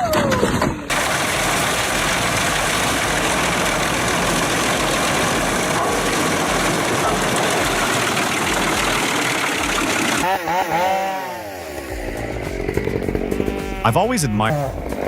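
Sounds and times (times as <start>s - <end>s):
machine engine running: 0.9s - 15.0s.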